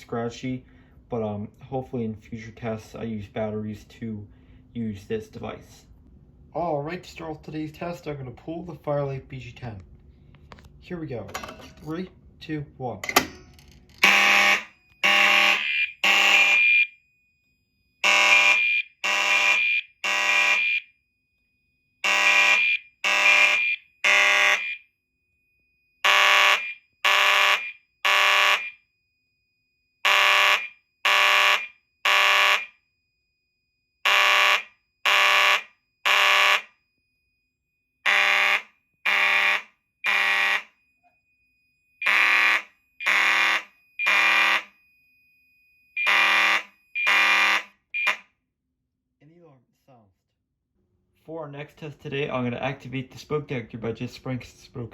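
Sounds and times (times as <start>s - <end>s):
fire alarm horn blasts: 14.0s - 17.0s, 17.6s - 37.2s, 38.0s - 48.3s.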